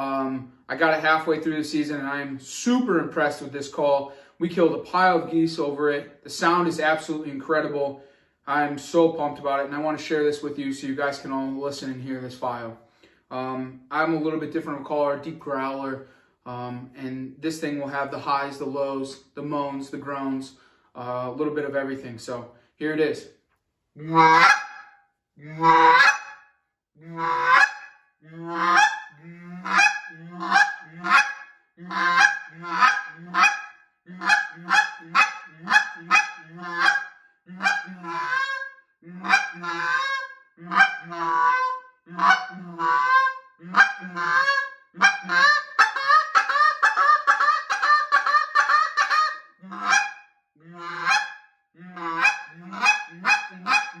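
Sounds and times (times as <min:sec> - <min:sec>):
goose call honks: 0:24.0 - 0:24.9, 0:25.5 - 0:26.3, 0:27.1 - 0:27.8, 0:28.4 - 0:50.2, 0:50.8 - 0:51.3, 0:52.0 - 0:54.0
goose call high clucks: 0:24.0 - 0:26.4, 0:27.0 - 0:54.0.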